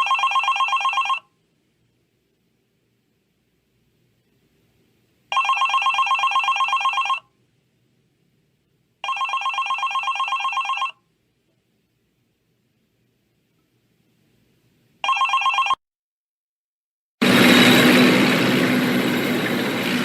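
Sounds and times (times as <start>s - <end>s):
telephone bell ringing: 0.0s - 1.3s, 5.3s - 7.3s, 9.0s - 11.0s, 15.0s - 15.8s.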